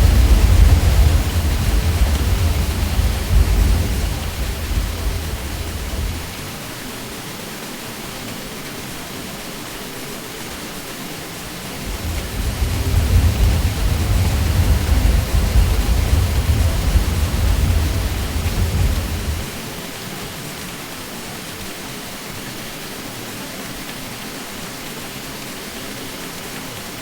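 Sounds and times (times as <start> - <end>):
deep low rumble: 0.0 - 6.6, 11.7 - 19.6
ceiling fan hiss: 0.0 - 27.0.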